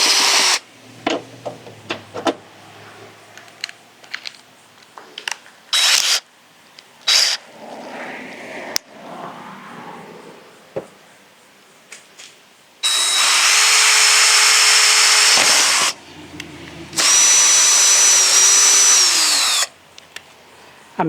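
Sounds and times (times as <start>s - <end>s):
power drill cutting with hole saw: 0.0s - 0.6s, 5.8s - 6.2s, 7.1s - 7.4s, 12.8s - 16.0s, 16.9s - 19.7s.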